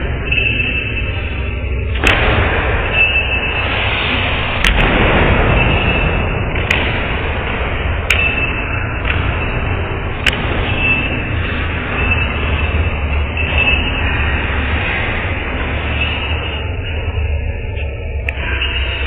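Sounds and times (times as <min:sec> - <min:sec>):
steady noisy rumble: 0:00.0 - 0:19.0.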